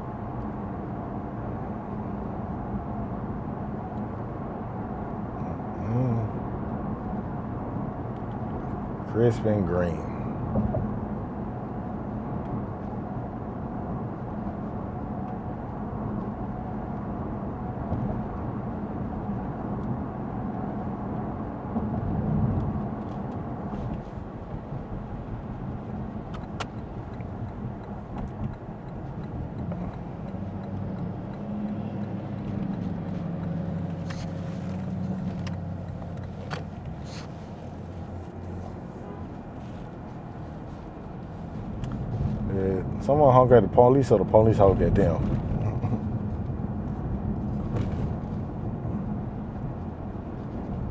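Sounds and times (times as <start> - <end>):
car engine drone while driving: 0.0 - 50.9
tyres on wet road: 14.0 - 50.9.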